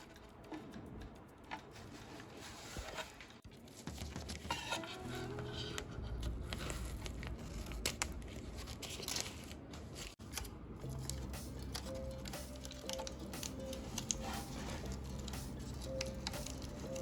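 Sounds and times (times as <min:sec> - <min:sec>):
material crinkling and clicking: 0:05.7 - 0:17.0.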